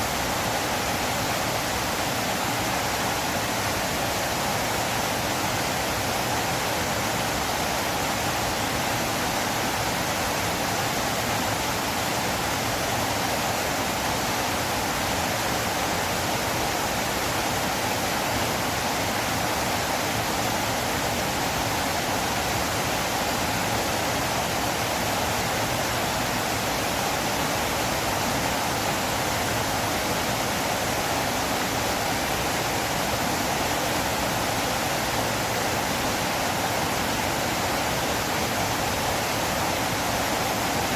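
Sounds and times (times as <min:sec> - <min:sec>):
river water rushing: 0:00.0 - 0:40.9.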